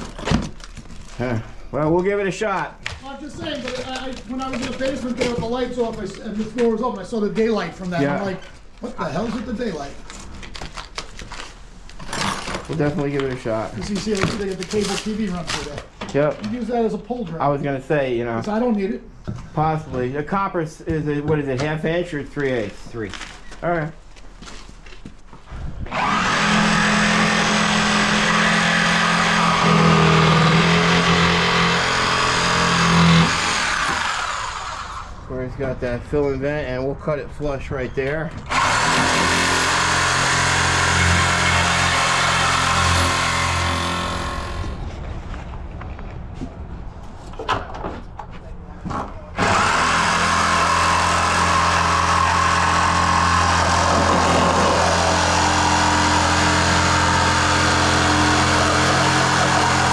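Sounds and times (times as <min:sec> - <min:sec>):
engine running: 0:25.9 - 0:35.2, 0:38.5 - 0:45.0
motor humming: 0:25.9 - 0:35.2, 0:38.5 - 0:44.8, 0:49.4 - 0:59.9.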